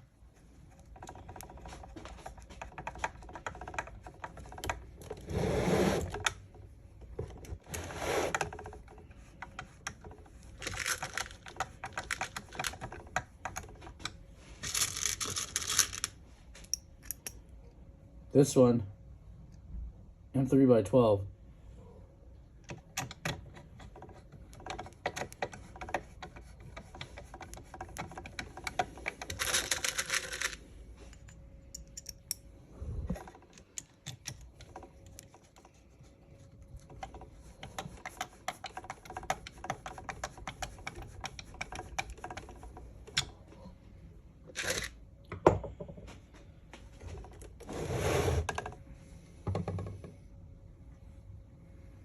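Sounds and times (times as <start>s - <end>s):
screws and plastic parts clicking: 8.3s - 17.4s, 22.6s - 32.4s, 33.1s - 35.8s.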